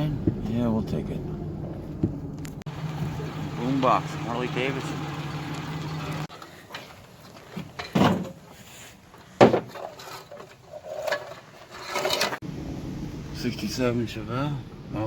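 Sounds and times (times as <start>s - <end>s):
vehicle engine hum: 0.0s - 6.4s, 12.4s - 15.0s
knocks and thumps: 7.5s - 8.4s, 9.4s - 10.0s.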